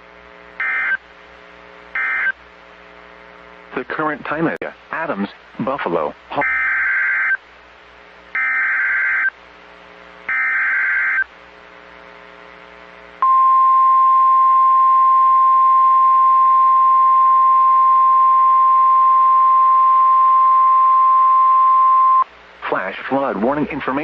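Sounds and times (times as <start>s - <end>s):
steady warning alarm tone: 0.6s - 1.0s, 2.0s - 2.4s, 6.4s - 7.4s, 8.4s - 9.4s, 10.3s - 11.3s.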